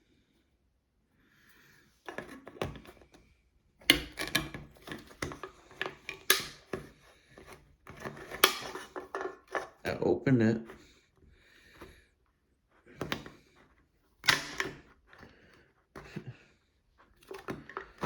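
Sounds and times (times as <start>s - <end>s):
can opener clicking and scraping: 2.1s - 3.1s, 3.8s - 9.9s, 14.2s - 15.4s, 17.2s - 18.0s.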